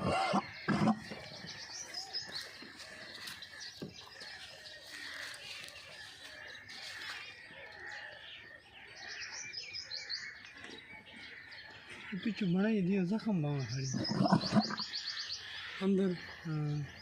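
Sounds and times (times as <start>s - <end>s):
camel coughing: 0.0s - 1.1s, 14.0s - 14.8s
small birds chirping: 0.0s - 17.0s.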